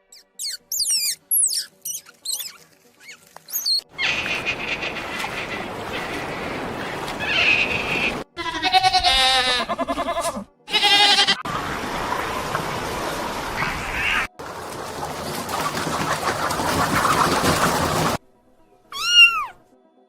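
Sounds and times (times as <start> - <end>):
open-air background: 0.0 - 20.0
farm animals bleating: 8.4 - 11.5, 19.0 - 19.6.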